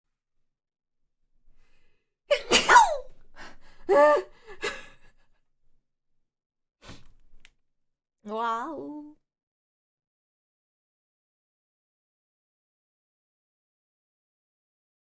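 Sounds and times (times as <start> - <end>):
person sneezing: 2.3 - 3.1.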